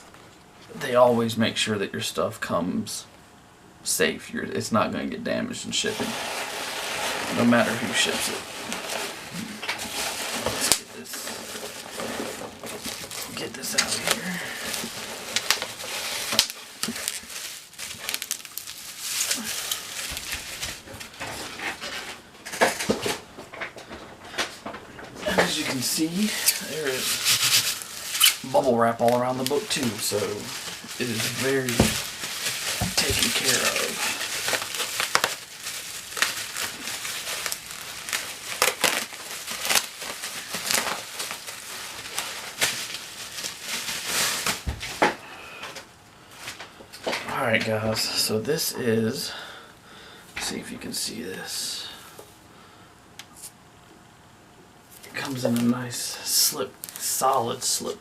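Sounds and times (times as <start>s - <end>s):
bubble wrap crinkling: 5.8s - 24.4s, 25.2s - 48.8s, 54.9s - 58.0s
packing material rustling and crackling: 5.8s - 48.0s, 54.9s - 58.0s.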